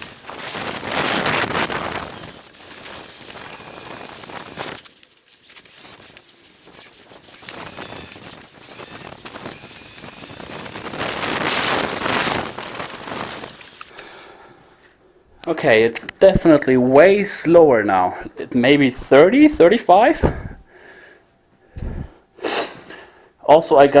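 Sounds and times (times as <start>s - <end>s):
bike road and drivetrain noise: 0.0s - 13.9s.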